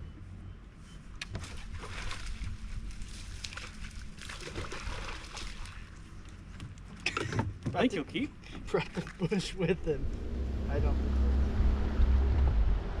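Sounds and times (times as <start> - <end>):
water sloshing against hull: 0.9 - 10.6
low steady rumble: 8.0 - 13.0.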